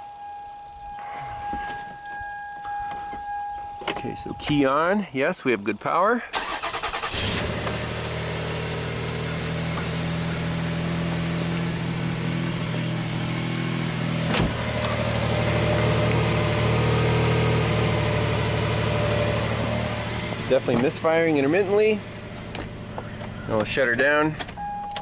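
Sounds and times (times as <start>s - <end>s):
engine idling rough: 7.2s - 24.6s.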